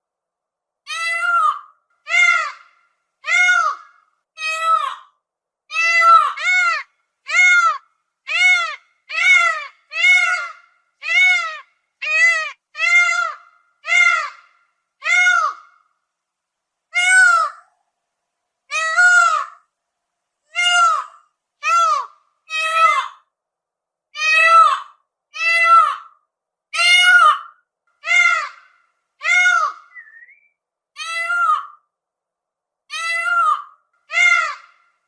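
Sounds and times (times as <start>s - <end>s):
peacock calling: 0.9s - 5.0s, 5.7s - 15.8s, 17.0s - 17.7s, 18.7s - 19.6s, 20.5s - 23.2s, 26.8s - 31.8s, 32.9s - 34.9s.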